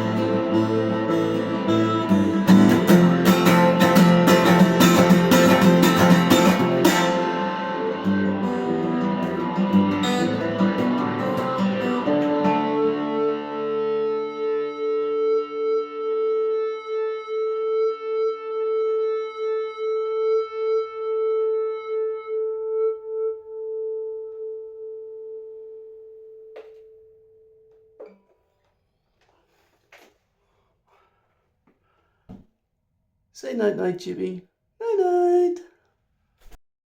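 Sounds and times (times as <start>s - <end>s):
acoustic guitar strummed chords: 0.0s - 28.2s
guitar chord ringing and pulsing: 0.0s - 28.2s.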